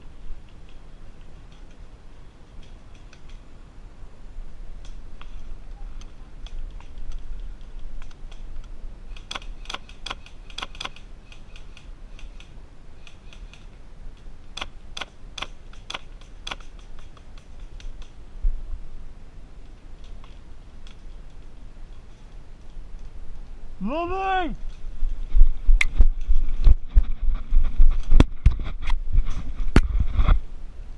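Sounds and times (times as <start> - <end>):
low steady rumble: 11.0 - 24.0, 24.6 - 30.9.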